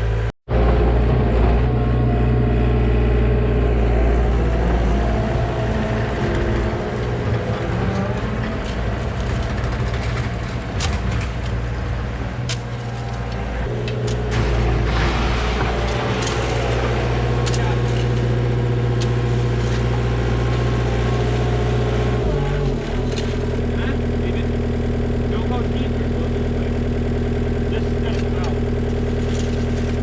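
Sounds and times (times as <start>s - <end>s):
heavy diesel engine running: 0.0s - 30.0s.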